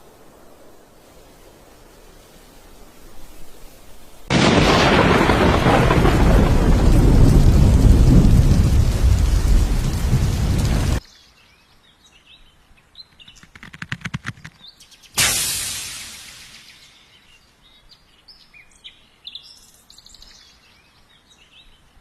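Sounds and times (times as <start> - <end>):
heavy rain: 4.2 - 11.0
rumbling thunder: 4.3 - 11.0
quick clicks: 13.3 - 16.6.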